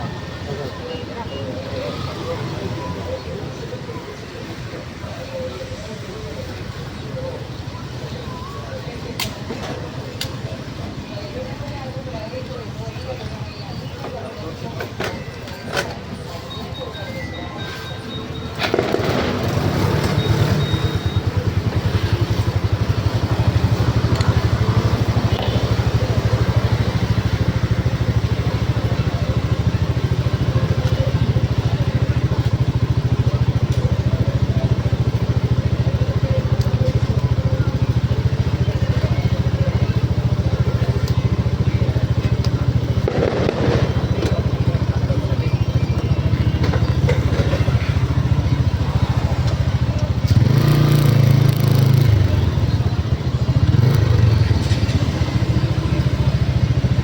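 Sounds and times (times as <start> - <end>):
motorcycle engine running: 18.7 - 57.0.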